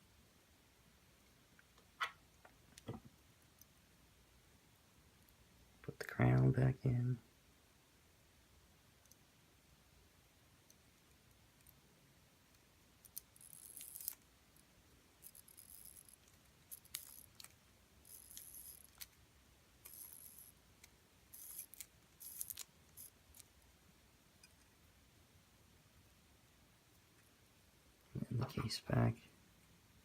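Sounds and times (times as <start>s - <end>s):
small metal parts clicking: 13.0s - 14.2s, 15.2s - 19.2s, 19.8s - 23.5s.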